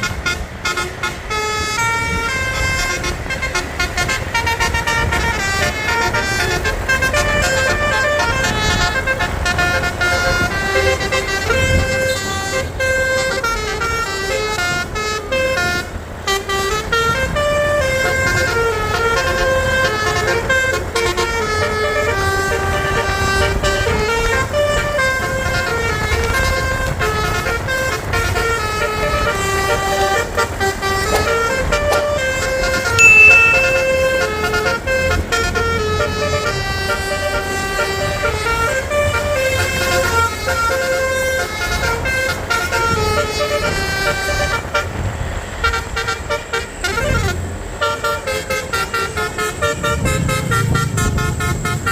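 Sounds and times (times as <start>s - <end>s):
bus multi-tone horn tune: 0.0s - 51.9s
high-pitched tone: 33.0s - 34.4s.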